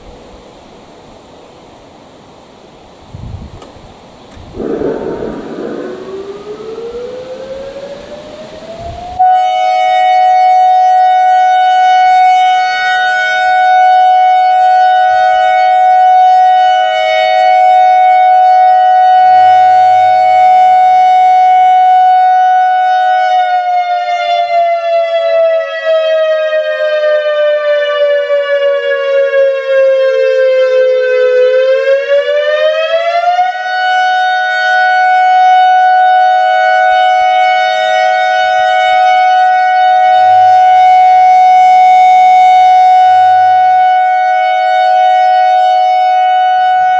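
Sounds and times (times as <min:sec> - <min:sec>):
electronic siren two-note tone: 0:04.6 - 0:12.4, 0:17.2 - 0:22.6, 0:37.9 - 0:44.2.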